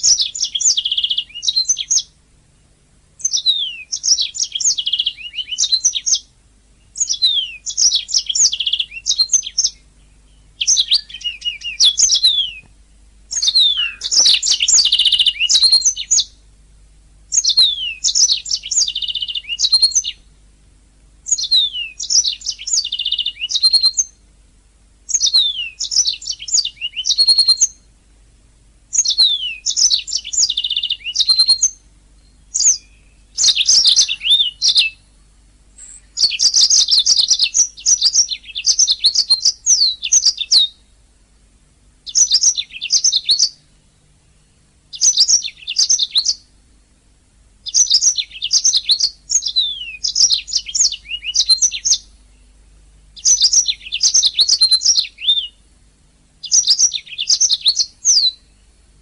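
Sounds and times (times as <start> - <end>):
canary singing trills: 0.0 - 2.2, 3.2 - 16.5, 17.3 - 20.4, 21.2 - 24.3, 25.0 - 28.0, 28.9 - 41.0, 42.0 - 47.0, 47.6 - 55.8, 56.4 - 58.8.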